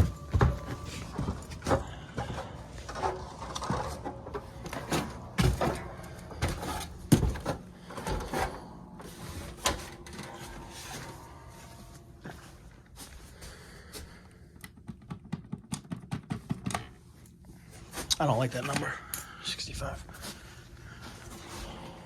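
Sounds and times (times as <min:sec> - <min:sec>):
footsteps on stairs: 0:00.0 - 0:09.8
faint steady hum: 0:00.0 - 0:15.0.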